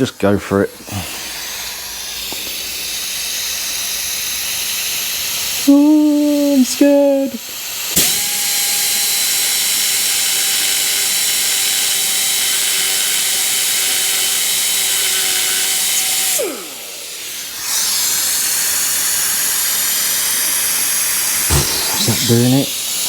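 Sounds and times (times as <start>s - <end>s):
die grinder whining: 0.0s - 23.0s
rising hiss: 21.4s - 23.0s.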